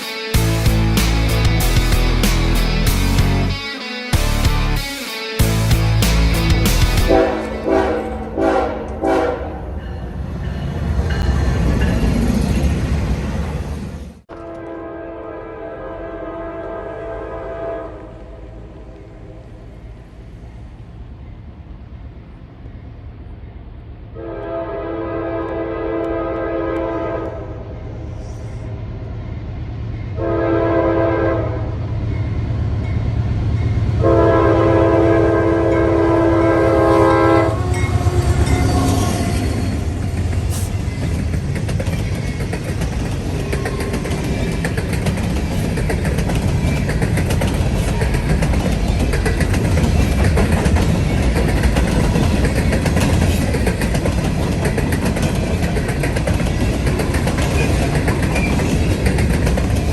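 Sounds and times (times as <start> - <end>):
train engine rumble: 0.0 - 3.6, 5.4 - 59.9
locomotive air horn: 6.9 - 9.7, 14.3 - 18.9, 24.2 - 27.6, 30.2 - 31.8, 34.0 - 39.7
wheels clattering on rails: 37.8 - 59.9.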